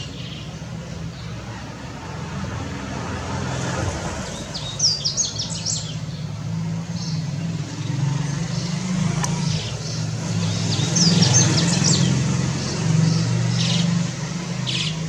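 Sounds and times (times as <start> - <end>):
traffic rumble: 0.0 - 15.0
bird singing high slurred notes: 6.9 - 15.0.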